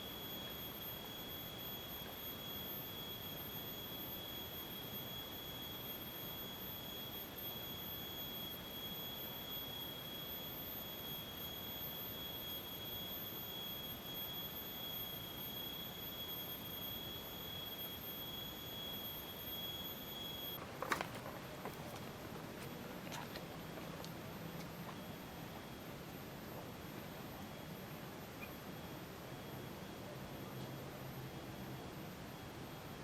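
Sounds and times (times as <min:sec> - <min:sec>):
high-pitched whine: 0:00.0 - 0:20.6.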